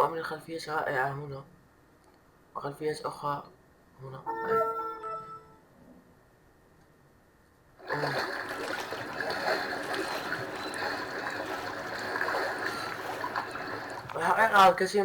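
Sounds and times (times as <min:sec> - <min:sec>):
trickling water: 0:07.8 - 0:15.0.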